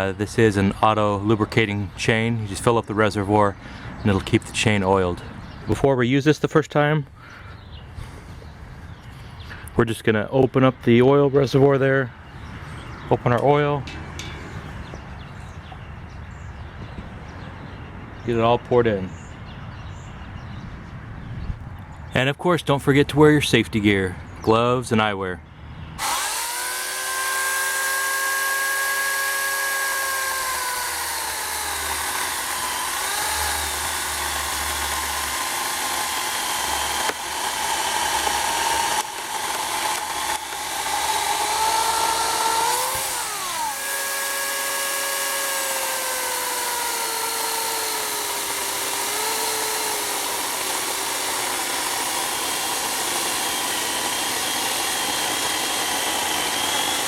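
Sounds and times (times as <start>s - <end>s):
electric chainsaw cutting wood: 26.0s - 57.0s.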